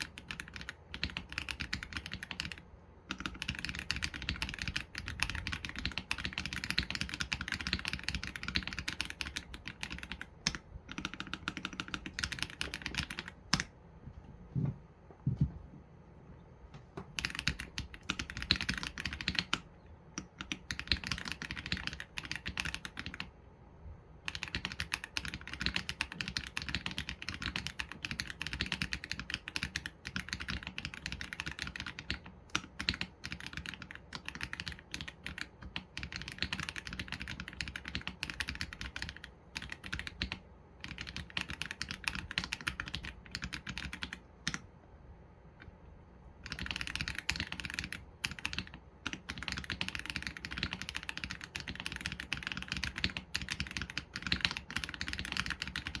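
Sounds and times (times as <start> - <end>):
mechanical keyboard typing: 0.0 - 13.7, 17.0 - 23.4, 24.2 - 44.7, 46.4 - 56.0.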